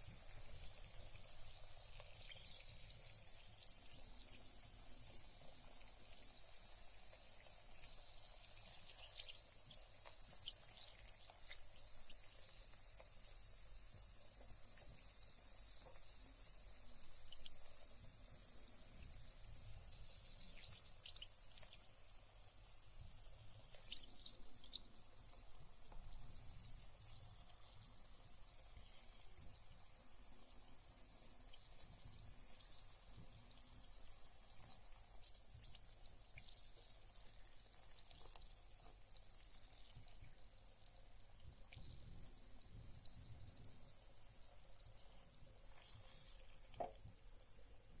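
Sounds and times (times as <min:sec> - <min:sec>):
bath bomb fizzing: 0:00.0 - 0:48.0
water dripping: 0:00.0 - 0:48.0.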